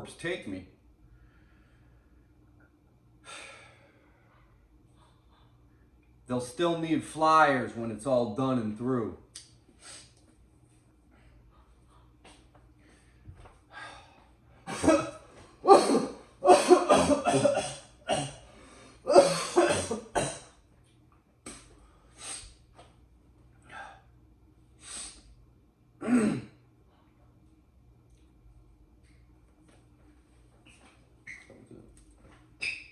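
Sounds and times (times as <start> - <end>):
faint low hum: 0.0 - 32.9
person coughing or gasping: 14.7 - 20.6, 26.0 - 26.6.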